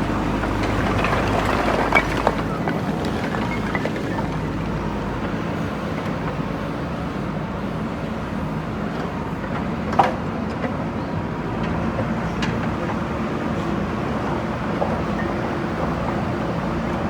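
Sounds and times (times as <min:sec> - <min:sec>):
diesel engine running: 0:00.0 - 0:08.6.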